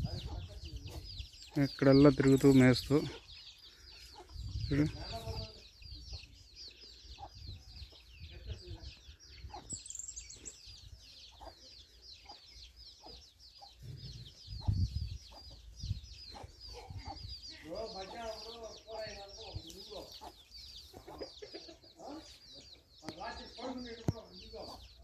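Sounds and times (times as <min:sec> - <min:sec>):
chickens clucking: 0:00.0 - 0:25.0.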